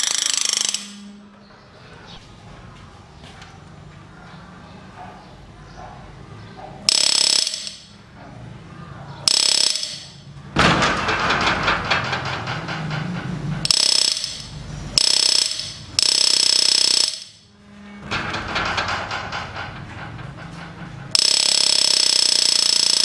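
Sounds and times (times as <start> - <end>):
motor alarm rattling and ringing: 0.0 - 1.8, 6.8 - 23.0.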